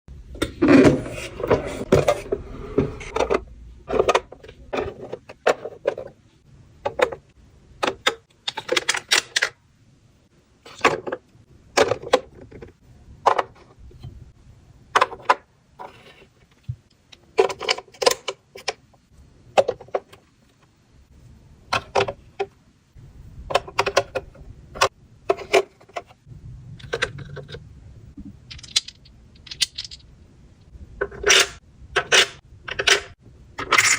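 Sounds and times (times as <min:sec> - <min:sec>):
small hard items clicking and rattling: 0:28.4 - 0:30.1.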